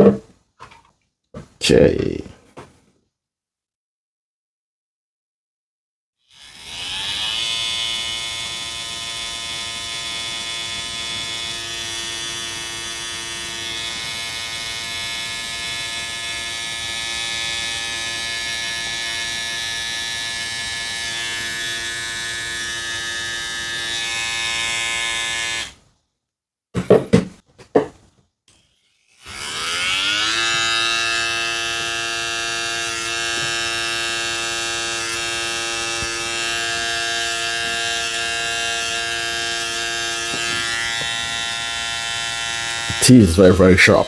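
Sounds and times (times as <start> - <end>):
sharp knocks: 0.0 - 0.3
hair trimmer buzzing: 6.3 - 25.8, 29.1 - 43.7.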